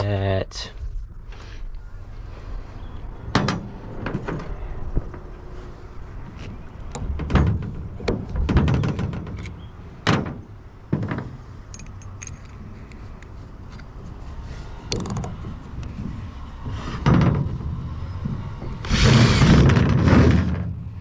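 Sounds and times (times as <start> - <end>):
tools clicking and rattling: 11.7 - 13.3.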